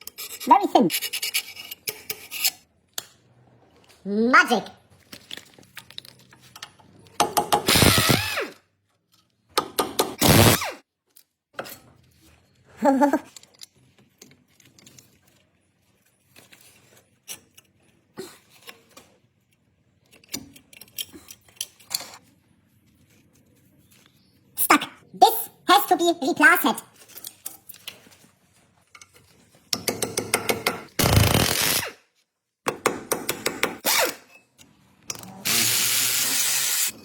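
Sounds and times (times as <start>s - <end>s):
power tool bursts: 7.7s - 8.4s, 10.2s - 10.8s, 31.0s - 32.0s.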